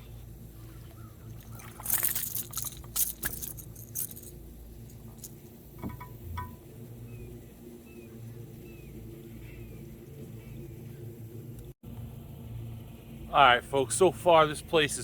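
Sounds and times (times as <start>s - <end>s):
lure rattling and metallic clinking: 1.2s - 6.7s.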